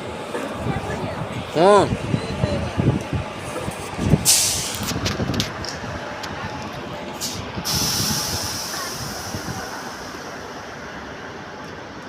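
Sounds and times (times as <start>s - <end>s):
high air hiss: 4.2s - 4.8s, 7.2s - 10.7s.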